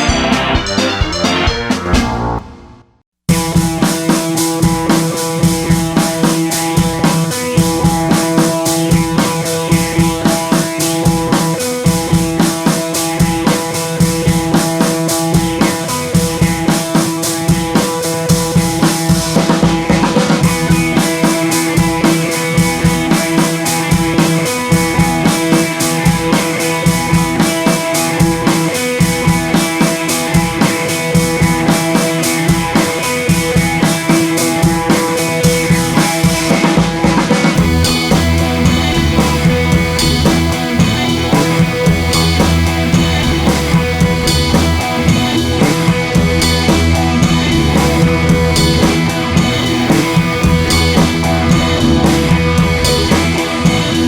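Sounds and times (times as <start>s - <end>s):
drum kit beat: 0.0s - 54.0s
sustained instrument tones: 37.6s - 54.0s.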